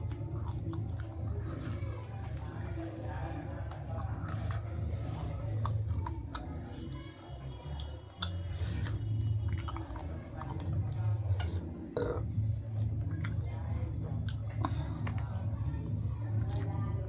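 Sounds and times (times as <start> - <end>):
person chewing: 0.0 - 13.4
mouth smacks: 0.1 - 13.4
wet mouth clicks: 5.6 - 13.4.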